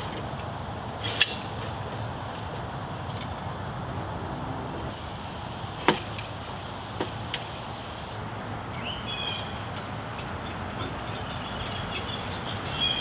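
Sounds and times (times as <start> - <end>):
background hiss: 0.0 - 9.9
bird chirping: 8.7 - 13.0.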